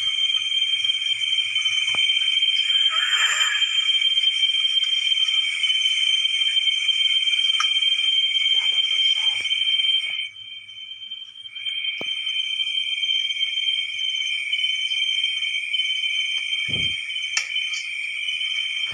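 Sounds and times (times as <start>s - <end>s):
crickets trilling: 0.0s - 10.3s.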